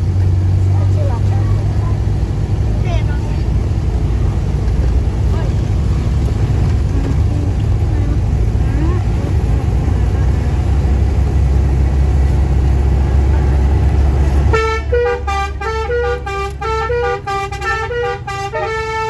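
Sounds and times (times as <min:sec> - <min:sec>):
vehicle engine and road rumble: 0:00.0 - 0:19.0
musical horn melody: 0:14.4 - 0:19.0.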